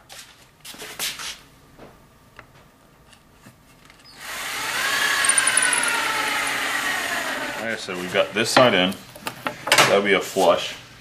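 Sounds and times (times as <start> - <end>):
power drill driving a screw: 4.1 - 7.6.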